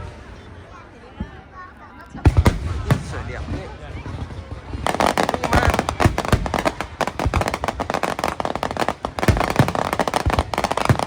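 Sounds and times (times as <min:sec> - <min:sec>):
deep firework booms: 0:02.2 - 0:11.0
fireworks crackling: 0:02.2 - 0:11.0.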